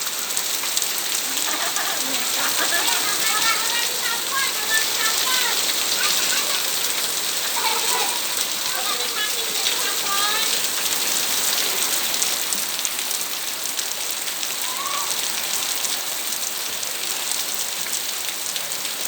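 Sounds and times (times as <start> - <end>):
steady rain falling: 0.0 - 19.0
faint voice sounds: 1.2 - 10.5, 14.5 - 15.8.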